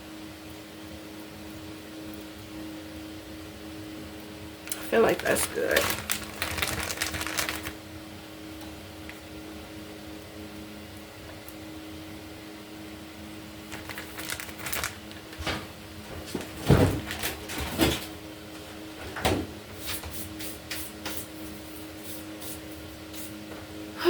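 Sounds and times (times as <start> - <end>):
kitchen items knocking and clattering: 13.8 - 18.1.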